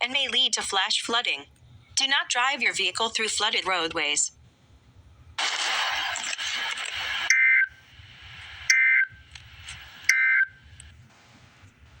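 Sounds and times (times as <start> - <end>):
bursts of data tones: 6.2 - 7.8, 8.6 - 10.6.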